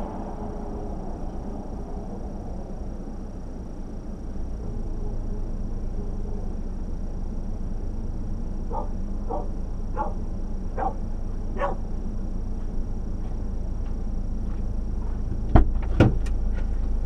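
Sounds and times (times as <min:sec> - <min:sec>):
steady low hum: 0:00.0 - 0:17.0
dog barking: 0:08.7 - 0:10.2, 0:10.8 - 0:11.0, 0:11.6 - 0:11.8.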